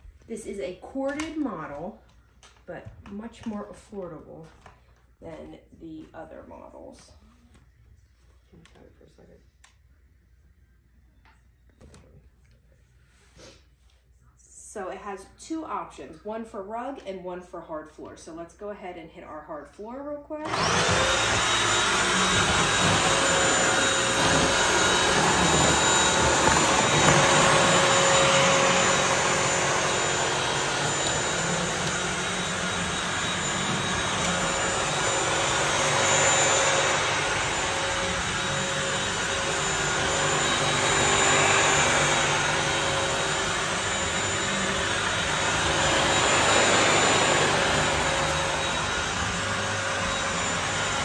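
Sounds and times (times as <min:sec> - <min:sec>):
vacuum mop motor whining: 0:20.4 - 0:51.0.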